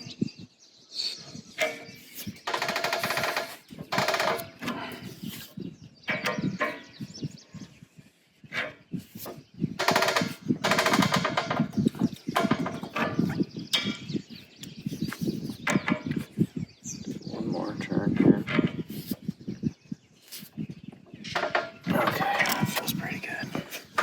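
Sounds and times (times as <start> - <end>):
fast rattling clicks: 2.4 - 4.8, 9.8 - 13.9.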